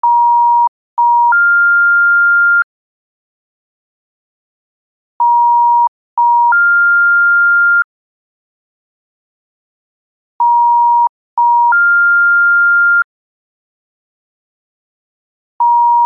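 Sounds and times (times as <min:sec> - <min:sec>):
telephone comfort tone: 0:10.4 - 0:13.0, 0:15.6 - 0:16.0.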